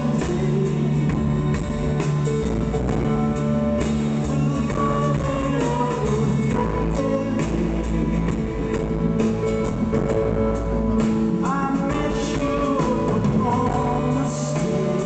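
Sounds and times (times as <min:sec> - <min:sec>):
drums: 0:00.0 - 0:15.0
guitars: 0:00.0 - 0:15.0.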